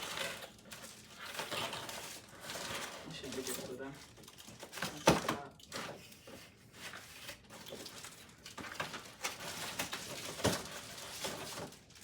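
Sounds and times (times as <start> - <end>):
packaging rustling: 6.8 - 12.0.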